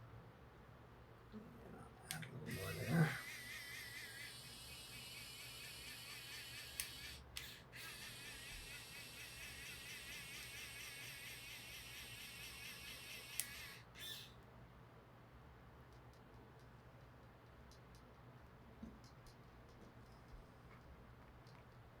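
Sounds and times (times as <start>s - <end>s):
sharp clicks: 2.0s - 14.3s, 15.9s - 20.1s
pen motor whining: 2.1s - 14.4s.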